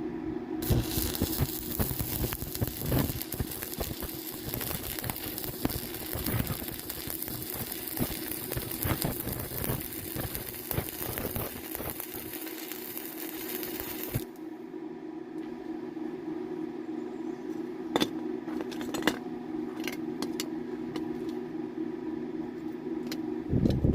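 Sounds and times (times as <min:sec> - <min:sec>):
low hum: 0:00.0 - 0:23.9
arc welding crackling hiss: 0:00.6 - 0:14.4.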